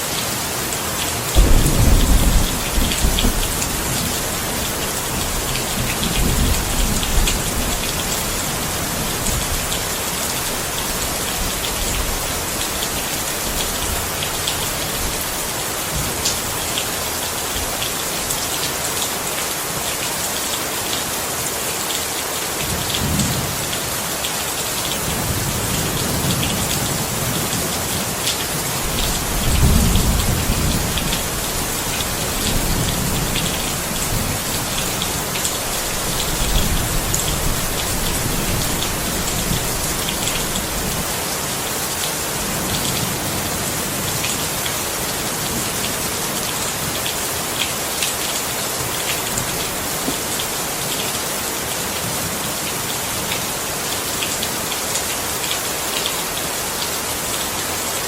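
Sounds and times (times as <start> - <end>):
steady rain: 0.0 - 58.0
low thunder rumbles: 1.4 - 9.7, 28.8 - 41.1.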